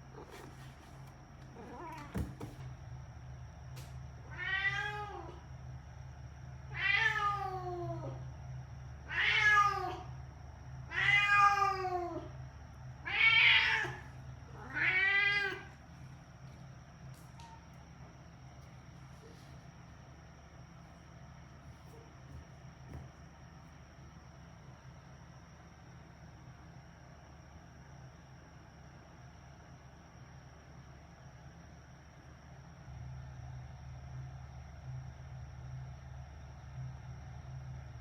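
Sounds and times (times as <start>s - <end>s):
cat meowing: 4.3s - 5.4s, 6.7s - 8.1s, 13.0s - 15.7s.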